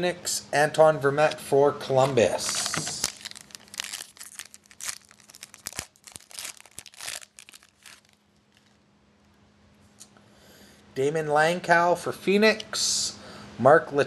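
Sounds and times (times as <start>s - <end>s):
wrapper crinkling and tearing: 2.1s - 8.8s.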